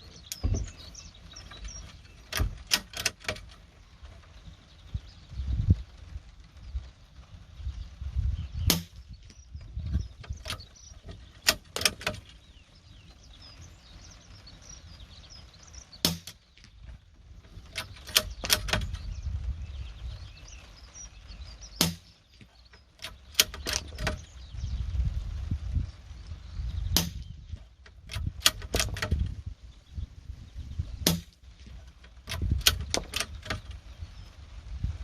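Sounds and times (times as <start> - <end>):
wind rumble on microphone: 0.0 - 35.0
rifle metallic clicks: 2.3 - 3.6, 10.2 - 12.4, 17.6 - 19.0, 23.0 - 24.2, 27.8 - 29.3, 32.3 - 33.8.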